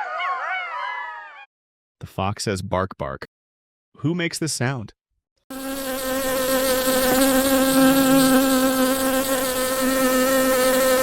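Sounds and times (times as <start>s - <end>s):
bee buzzing: 5.5s - 11.0s.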